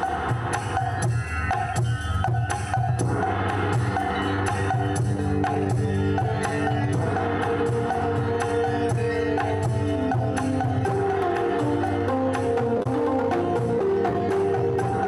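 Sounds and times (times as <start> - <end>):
steady percussion beat: 0.0 - 15.0
sustained melody notes: 3.0 - 15.0.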